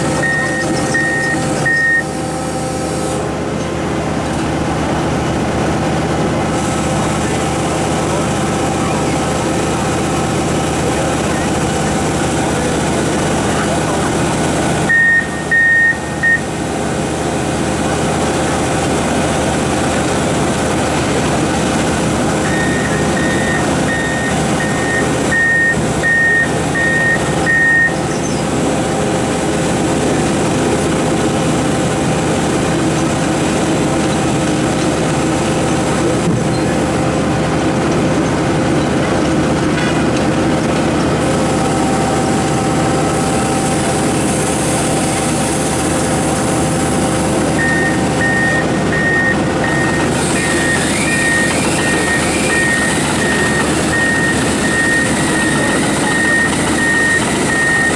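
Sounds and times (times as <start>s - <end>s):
high-pitched warning alarm beeping: 0.0s - 3.0s, 14.4s - 16.6s, 21.6s - 28.7s, 47.3s - 57.9s
mining excavator running: 0.0s - 57.9s.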